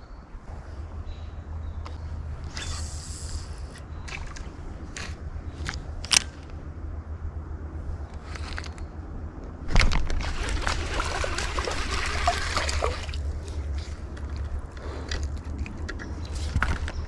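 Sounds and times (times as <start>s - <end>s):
steady low rumble: 0.0s - 17.0s
water sloshing and splashing: 9.7s - 15.7s.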